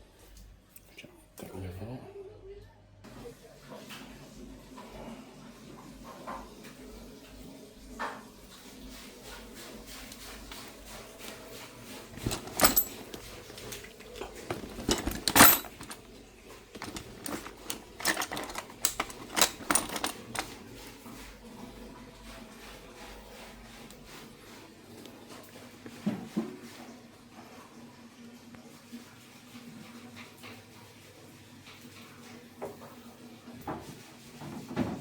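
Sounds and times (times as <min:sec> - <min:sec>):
metal tools clinking and knocking: 0:12.1 - 0:16.1, 0:16.7 - 0:20.6
loud metal clanks: 0:12.2 - 0:16.0, 0:16.8 - 0:20.5.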